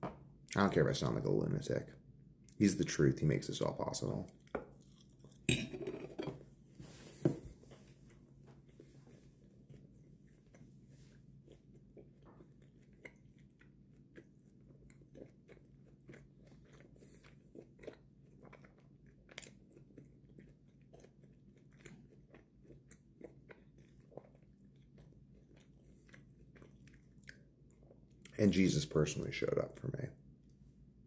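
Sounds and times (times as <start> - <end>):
person chewing food: 6.8 - 28.3.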